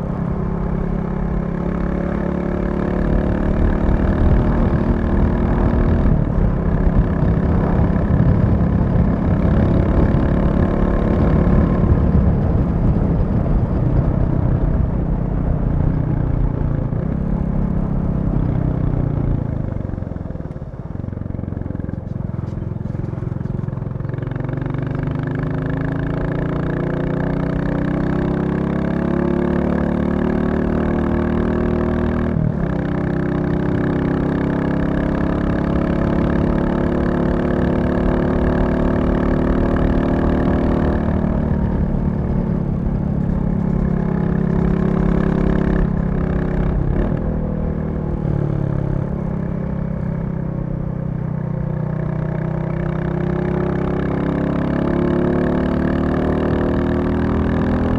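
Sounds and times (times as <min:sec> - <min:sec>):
motorcycle engine under load: 0:00.0 - 0:57.9.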